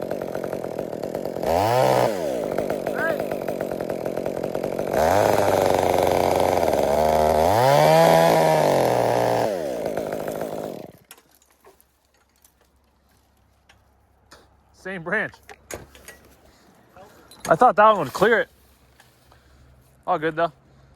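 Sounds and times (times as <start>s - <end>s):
chainsaw cutting wood: 0.0s - 11.5s.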